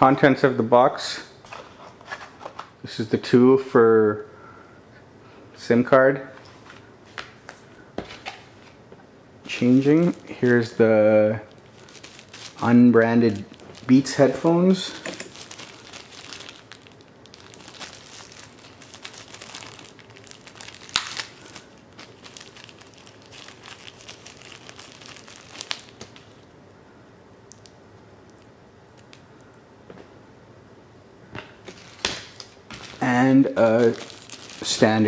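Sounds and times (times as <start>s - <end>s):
packaging crinkling: 9.5s - 26.5s, 31.7s - 35.0s.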